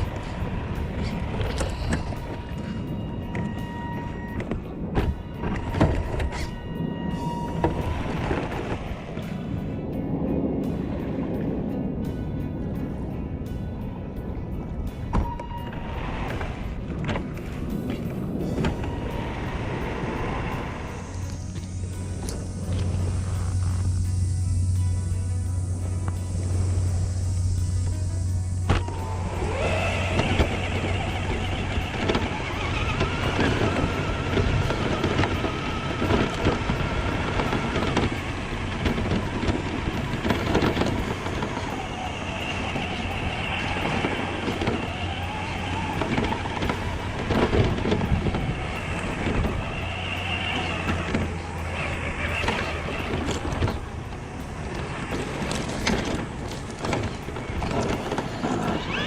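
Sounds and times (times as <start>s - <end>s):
rough tyre and terrain noise: 0.0s - 59.0s
toy car motor whine: 18.5s - 59.0s.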